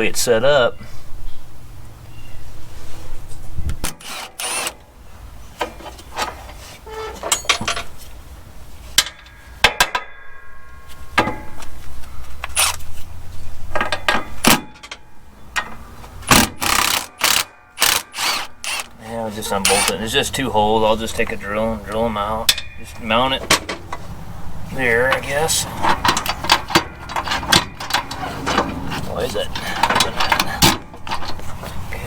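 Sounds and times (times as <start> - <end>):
clanking of tools and metal parts: 5.6 - 8.1, 8.9 - 13.0, 13.7 - 20.1, 21.9 - 24.1, 24.7 - 32.0
steady low hum: 18.5 - 32.0.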